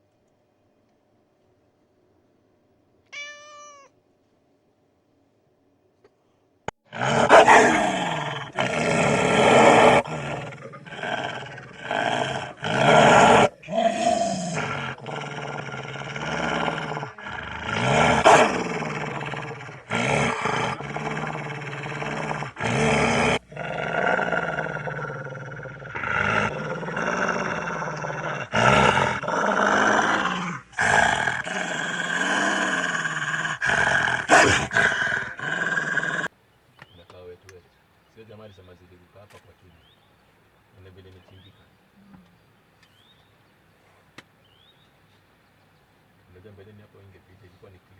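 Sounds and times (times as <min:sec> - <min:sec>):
animal growling and roaring: 0:06.9 - 0:36.3.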